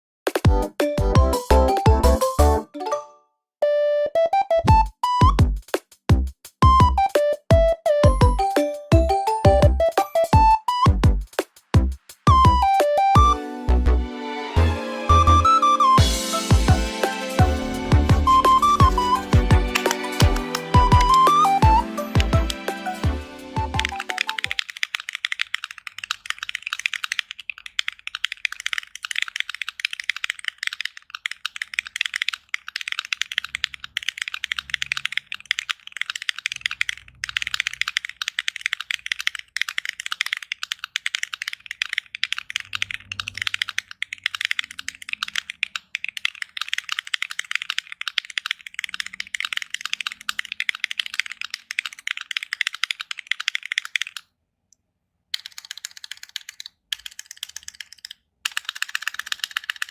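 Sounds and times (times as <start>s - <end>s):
mechanical keyboard typing: 17.9s - 54.3s, 55.4s - 59.9s.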